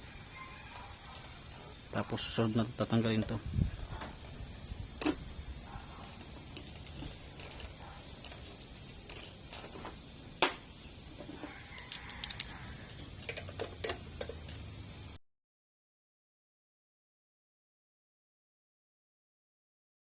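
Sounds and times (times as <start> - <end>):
metal clicks of hand tools: 11.8 - 14.7.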